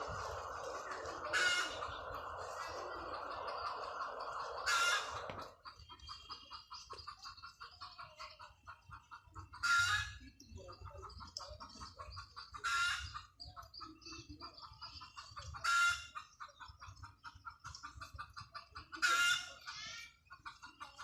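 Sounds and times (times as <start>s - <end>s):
chickens clucking: 0.0s - 21.0s
chicken squawking: 0.2s - 3.1s, 4.4s - 6.1s.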